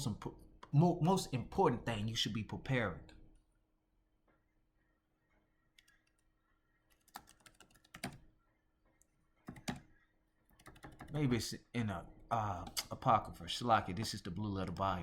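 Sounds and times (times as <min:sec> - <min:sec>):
computer keyboard typing: 0:05.8 - 0:06.3, 0:06.9 - 0:08.3, 0:09.4 - 0:09.9, 0:10.5 - 0:11.3, 0:12.6 - 0:13.0.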